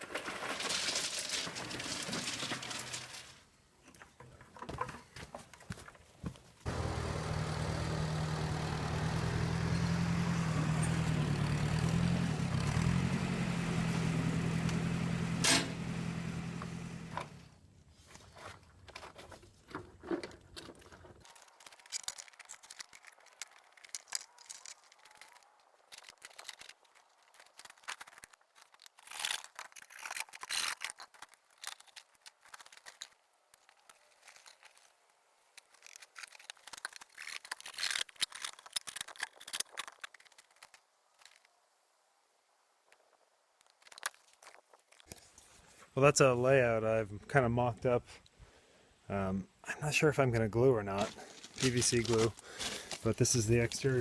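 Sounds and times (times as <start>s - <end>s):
scrapes and crinkling from handling: 0.0s - 6.6s, 17.8s - 41.6s, 42.9s - 46.0s, 50.2s - 54.0s
tractor engine running: 6.7s - 17.5s.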